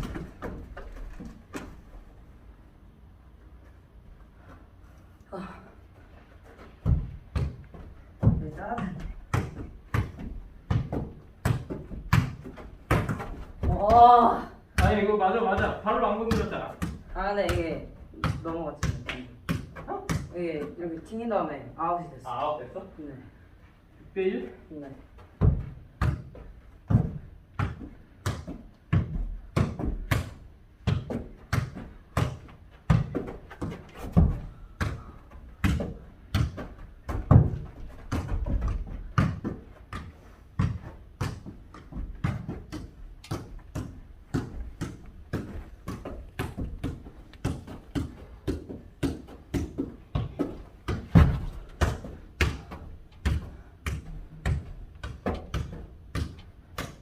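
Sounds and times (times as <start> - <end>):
football thudding on hard floor: 30.9 - 56.9.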